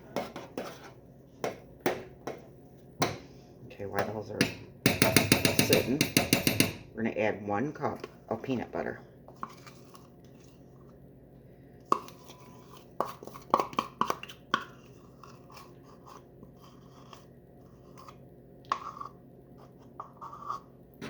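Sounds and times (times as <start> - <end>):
spoon scraping peanut butter: 0.0 - 1.0, 9.3 - 10.9, 11.9 - 20.8
faint steady hum: 0.0 - 21.0
spoon tapping against cup: 4.4 - 6.8.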